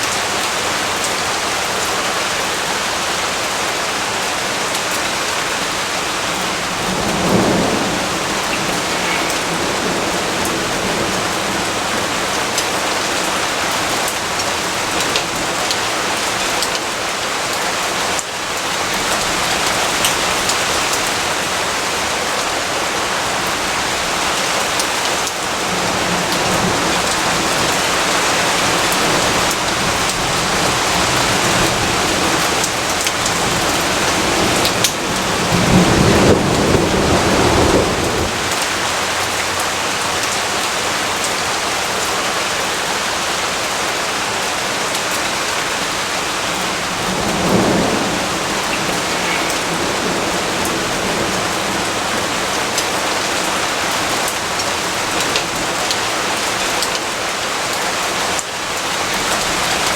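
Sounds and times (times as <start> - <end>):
heavy rainfall: 0.0 - 59.9
thunder rumbling: 5.8 - 15.6, 22.9 - 40.3, 45.8 - 55.2.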